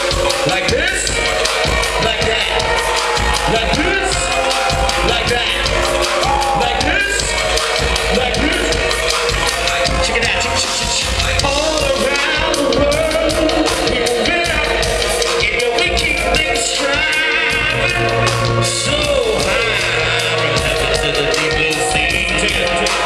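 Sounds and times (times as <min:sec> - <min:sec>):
live band music: 0:00.0 - 0:23.0.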